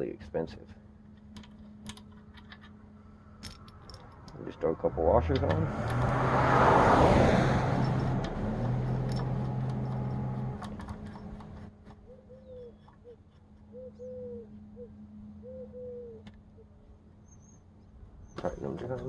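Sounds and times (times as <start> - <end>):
motor vehicle passing: 1.0 - 12.0
dove cooing: 12.0 - 16.3.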